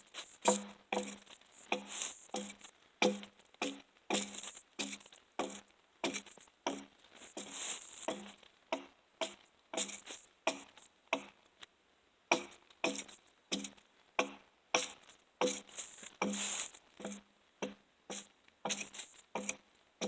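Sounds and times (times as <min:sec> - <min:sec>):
axe striking a log: 0:00.5 - 0:06.9, 0:12.3 - 0:16.4.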